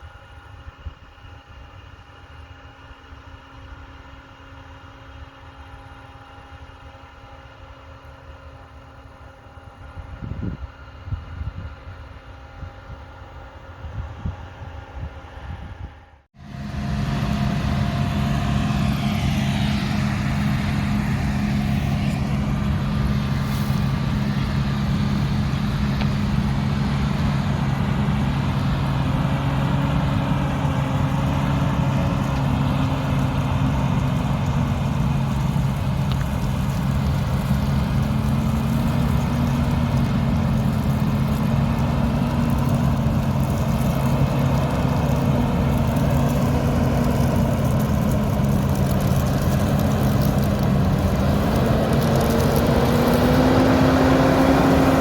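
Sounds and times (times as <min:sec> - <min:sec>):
combine harvester engine drone: 0:00.0 - 0:55.0.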